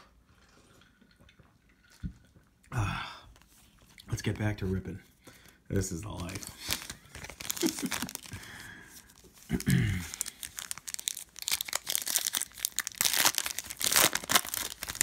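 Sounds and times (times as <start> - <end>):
foil wrapper tearing and crinkling: 6.2 - 15.0.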